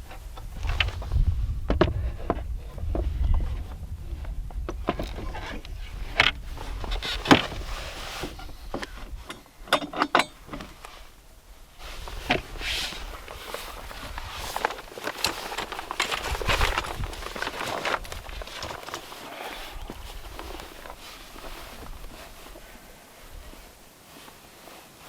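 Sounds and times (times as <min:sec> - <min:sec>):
wind rumble on microphone: 0:00.0 - 0:09.7, 0:10.5 - 0:14.9, 0:15.6 - 0:18.9, 0:19.7 - 0:23.8
objects being handled: 0:11.8 - 0:25.0.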